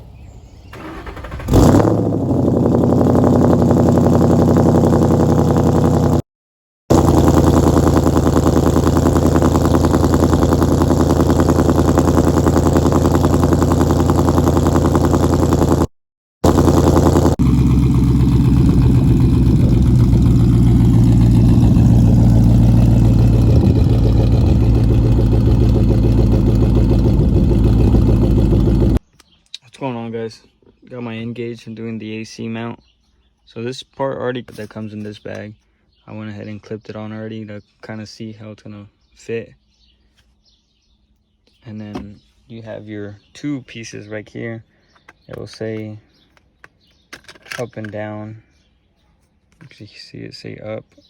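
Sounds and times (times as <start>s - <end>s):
car engine starting: 0.6s - 6.2s, 6.9s - 29.0s
engine revving: 0.8s - 6.2s, 6.9s - 29.0s
lumpy engine idle: 6.9s - 29.0s.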